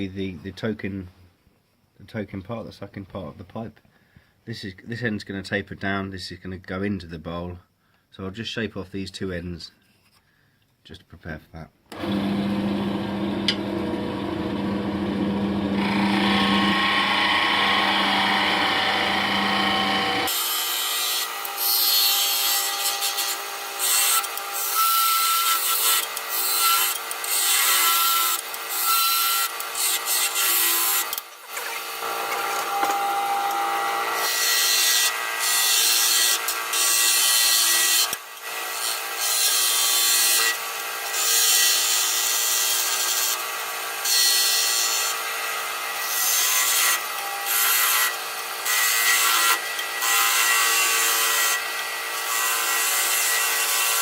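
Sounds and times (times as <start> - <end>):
lathe motor hum: 11.9 - 20.3.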